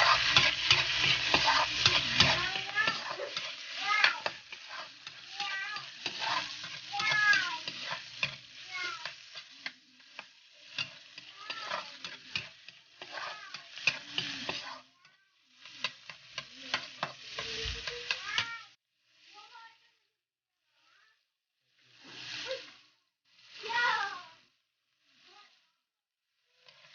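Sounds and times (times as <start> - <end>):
utensil clicking against pan: 0.0 - 18.6
food sizzling in a pan: 0.0 - 26.9.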